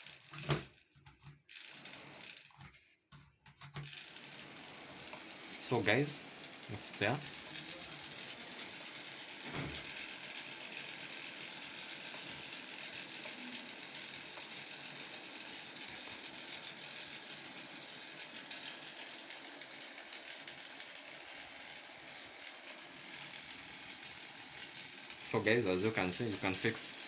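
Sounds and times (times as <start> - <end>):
electric fan whirring: 1.5 - 2.8, 3.6 - 27.0.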